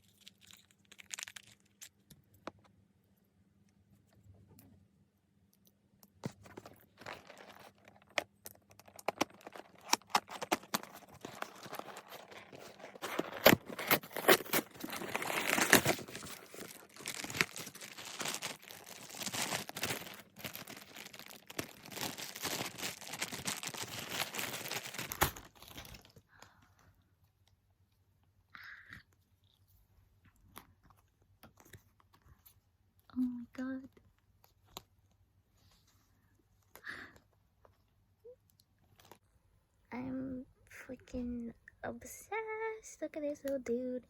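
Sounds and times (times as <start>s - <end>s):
packaging tearing and crinkling: 0.0s - 2.0s, 6.4s - 26.1s.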